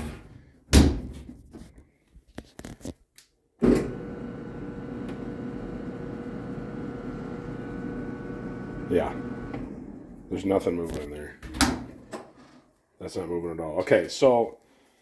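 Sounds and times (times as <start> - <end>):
dryer motor humming: 3.6 - 10.7.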